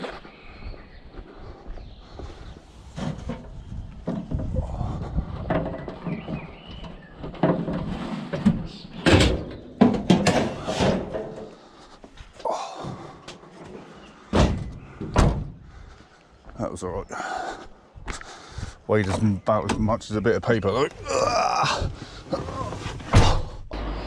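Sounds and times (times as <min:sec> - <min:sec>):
scrap metal knocking and clattering: 0:05.2 - 0:11.6.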